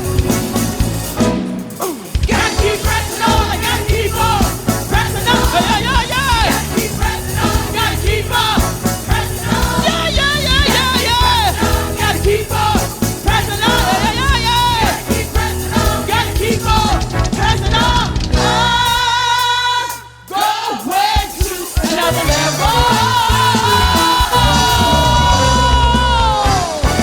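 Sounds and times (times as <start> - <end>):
worship team singing with band: 0.0 - 27.0.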